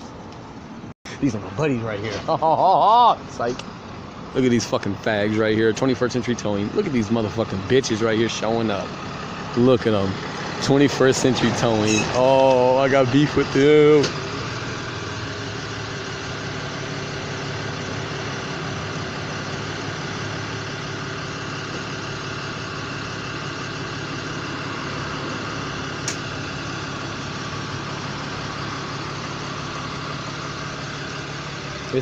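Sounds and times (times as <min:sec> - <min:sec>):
vehicle engine idling: 0:00.0 - 0:32.0
short click: 0:26.0 - 0:26.2.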